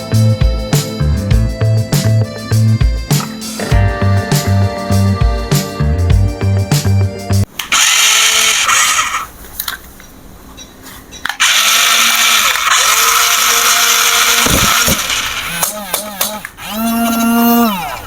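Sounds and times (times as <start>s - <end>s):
music: 0.0s - 7.5s
toy vehicle motor whirring: 7.6s - 9.3s, 11.4s - 18.0s.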